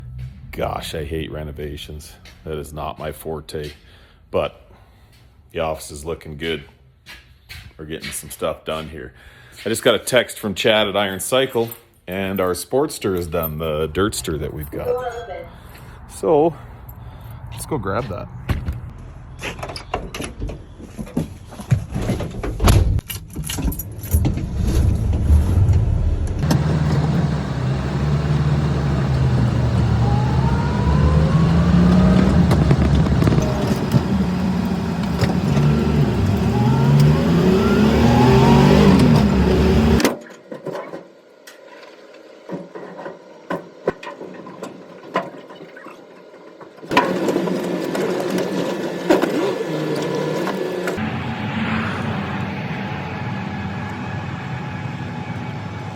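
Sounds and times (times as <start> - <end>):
vehicle engine accelerating: 0.0 - 2.4, 24.6 - 40.0, 47.8 - 55.9.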